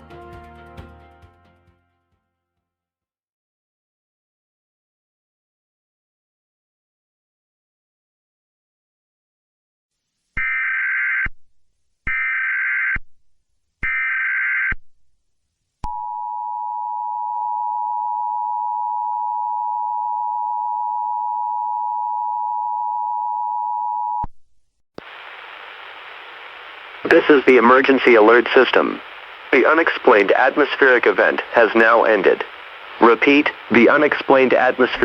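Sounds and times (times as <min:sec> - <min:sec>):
static hiss: 0:25.0 - 0:35.0.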